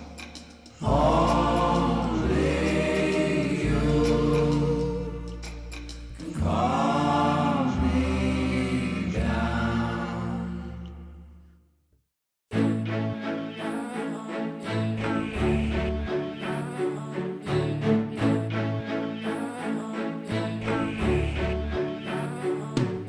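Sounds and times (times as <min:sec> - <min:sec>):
steady bass line: 0:00.0 - 0:10.8
voices singing long notes: 0:00.0 - 0:11.0, 0:12.6 - 0:23.0.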